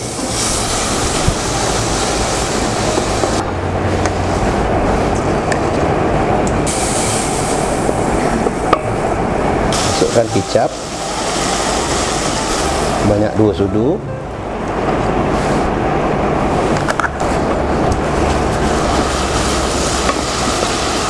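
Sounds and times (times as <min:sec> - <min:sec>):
paste sizzling and bubbling in oil: 0:18.3 - 0:21.0.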